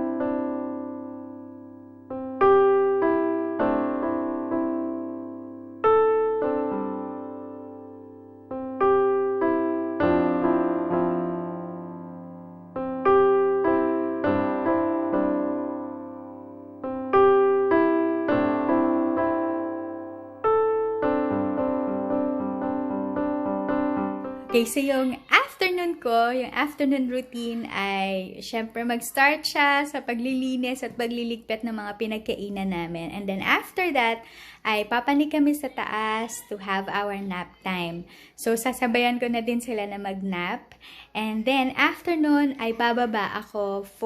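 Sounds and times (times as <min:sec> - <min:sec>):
gentle electric piano: 0:00.0 - 0:24.7.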